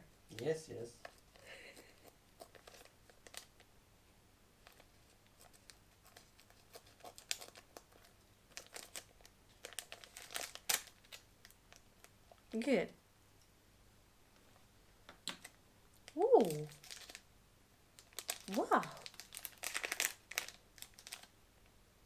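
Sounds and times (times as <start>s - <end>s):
packaging being cut and handled: 8.6s - 11.2s, 18.2s - 21.2s.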